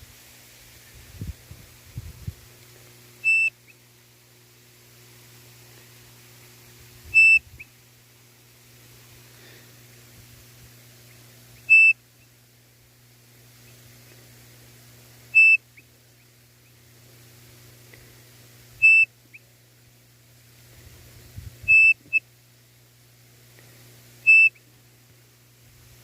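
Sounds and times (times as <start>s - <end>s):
bird-call whistle notes: 3.2s - 3.8s, 7.1s - 7.7s, 11.7s - 12.0s, 15.3s - 15.6s, 18.8s - 19.1s, 21.7s - 22.2s, 24.2s - 24.6s.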